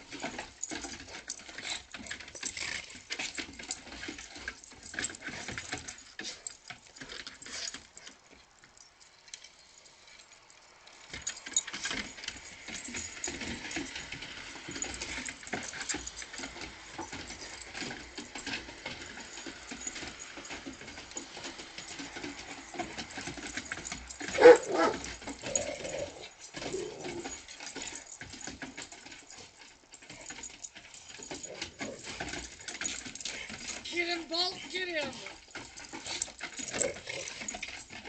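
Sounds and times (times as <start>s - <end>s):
rustling and clicking: 0.0s - 38.0s
dog crying: 24.4s - 25.6s.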